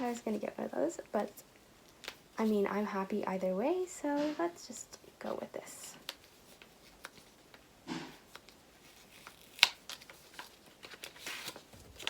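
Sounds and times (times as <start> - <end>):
packet rustling: 5.6 - 12.0.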